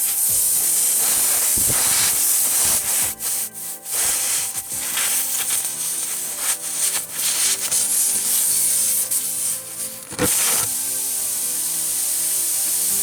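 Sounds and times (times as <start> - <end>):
air hissing from tire puncture: 0.0 - 13.0
screw scraping tire tread: 6.4 - 10.8.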